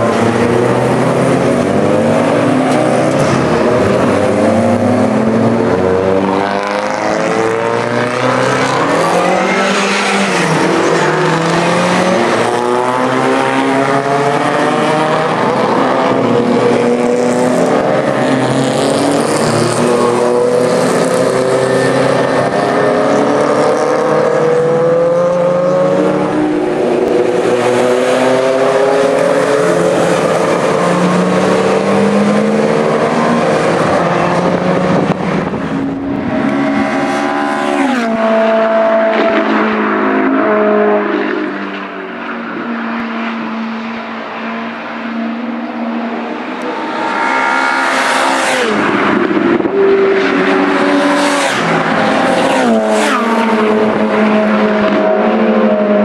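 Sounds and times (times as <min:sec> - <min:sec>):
racing car engines passing at high revs: 0:00.0 - 0:56.0.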